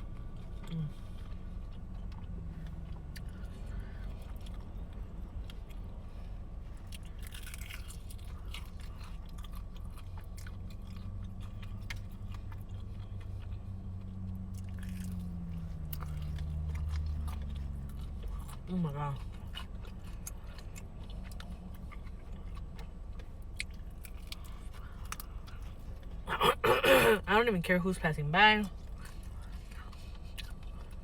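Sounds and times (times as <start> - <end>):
chewing and biting: 0.0 - 26.9, 28.6 - 31.0
small crunches: 6.9 - 12.9, 14.5 - 18.1.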